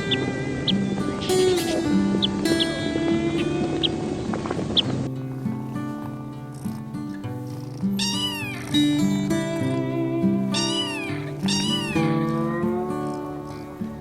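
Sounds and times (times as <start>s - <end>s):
background music: 0.0s - 14.0s
animal high call: 7.8s - 13.4s.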